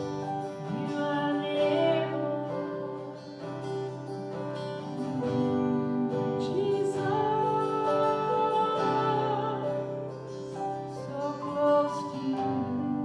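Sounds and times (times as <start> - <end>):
strummed acoustic guitar: 0.0 - 13.0.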